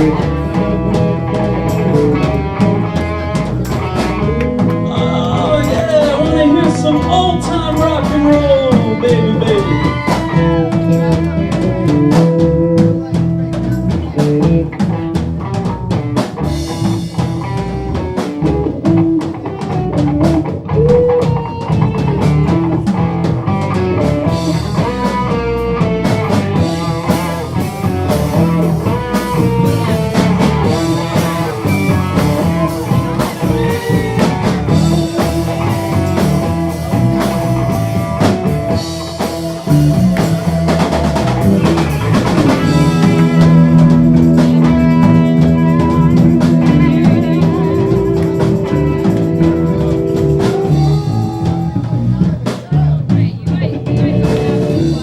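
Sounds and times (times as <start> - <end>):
live rock band instrumental: 0.0 - 55.0.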